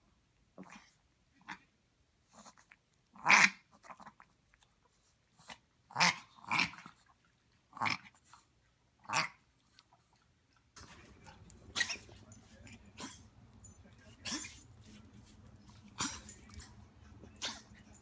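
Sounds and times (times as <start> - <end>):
dog coughing and snorting: 11.3 - 14.7, 15.8 - 18.0.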